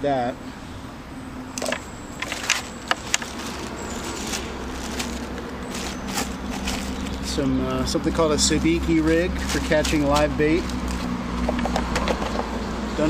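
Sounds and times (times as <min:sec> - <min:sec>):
fishing tackle clicks and knocks: 0:01.6 - 0:07.3, 0:09.1 - 0:12.5.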